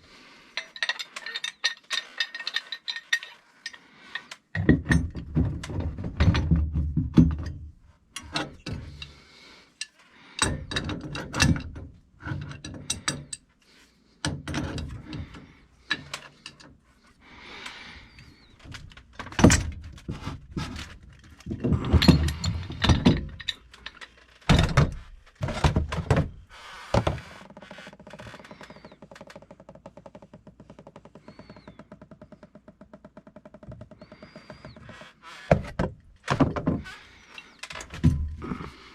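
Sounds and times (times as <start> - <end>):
metal tools knocking and clanking: 0.6 - 9.2, 10.4 - 13.4, 14.2 - 16.7, 18.1 - 27.2.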